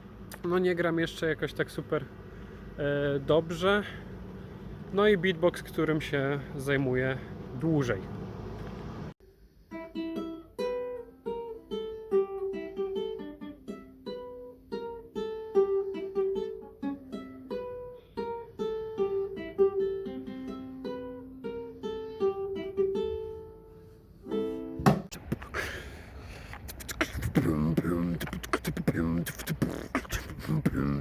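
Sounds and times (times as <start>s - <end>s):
ukulele picked melody: 9.6s - 25.7s.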